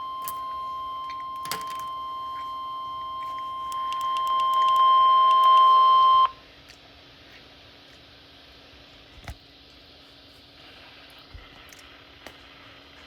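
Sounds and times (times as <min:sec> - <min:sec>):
steady high alarm tone: 0:00.0 - 0:06.4.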